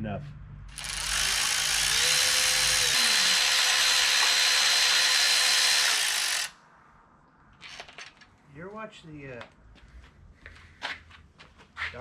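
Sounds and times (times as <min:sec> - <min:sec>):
power tool whining: 0:00.7 - 0:06.6.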